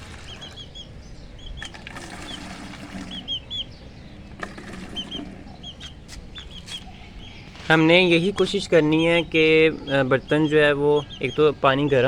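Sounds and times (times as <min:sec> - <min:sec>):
small birds chirping: 0:00.0 - 0:12.0
water vessels knocking: 0:04.1 - 0:06.1.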